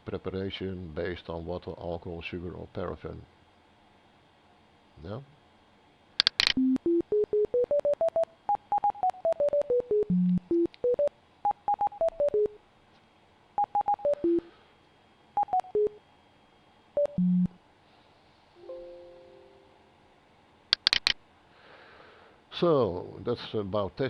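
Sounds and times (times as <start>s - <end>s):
soft two-note tone: 18.6s - 19.9s.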